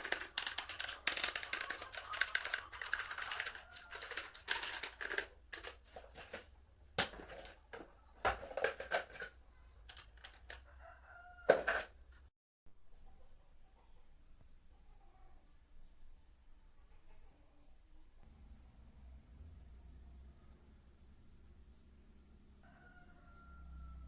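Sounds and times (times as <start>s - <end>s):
mechanical keyboard keys clicking: 0.0s - 6.4s.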